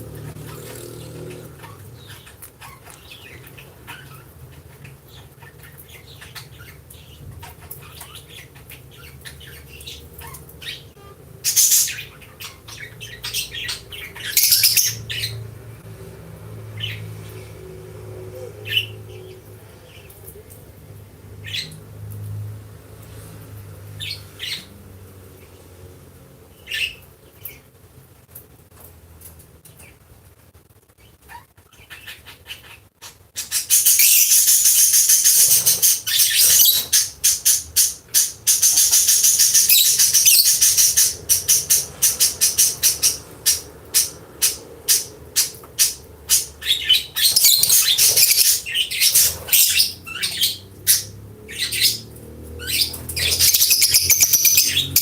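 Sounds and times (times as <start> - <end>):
lovebirds chirping: 0.0 - 15.8, 26.5 - 27.8, 31.0 - 55.0.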